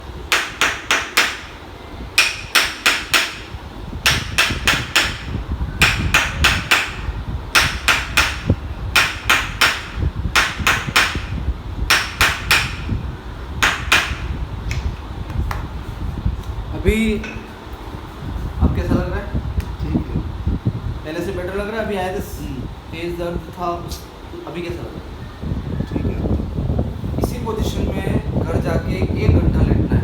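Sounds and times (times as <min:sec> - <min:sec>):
sharp knocking strikes: 0:00.3 - 0:01.6, 0:02.2 - 0:13.0, 0:13.6 - 0:14.9.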